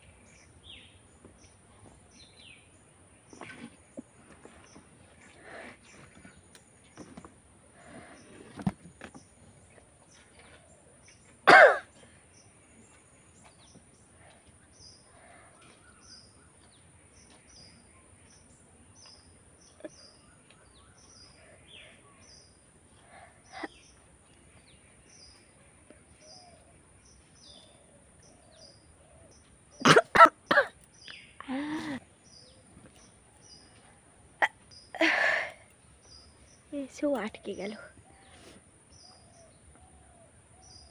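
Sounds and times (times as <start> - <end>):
bird chirping: 0.0 - 40.9
stifled sneezes: 11.5 - 11.9, 29.8 - 30.8.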